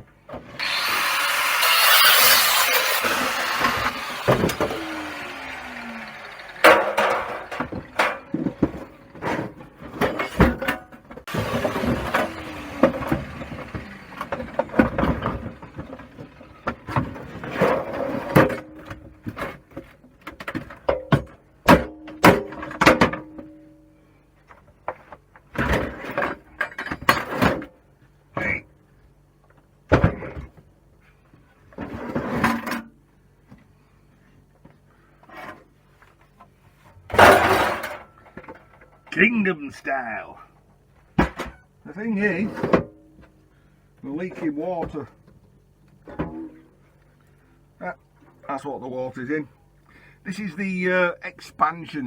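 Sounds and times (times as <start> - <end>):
boiler parts knocking and scraping: 1.6 - 20.8.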